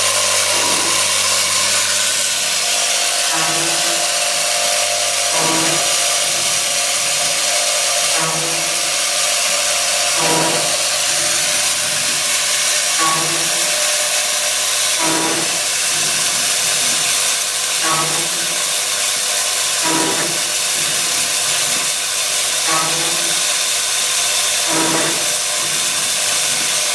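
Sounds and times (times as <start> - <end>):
short low mechanical sound: 0.0 - 3.8
milling machine hissing: 0.0 - 26.9.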